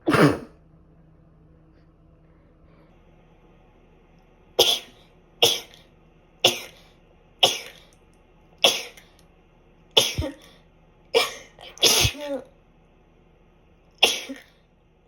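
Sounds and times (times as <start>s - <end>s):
person sneezing: 0.0s - 0.5s, 4.6s - 5.8s, 6.4s - 7.8s, 8.6s - 9.1s, 10.0s - 10.5s, 11.2s - 12.4s, 14.0s - 14.5s.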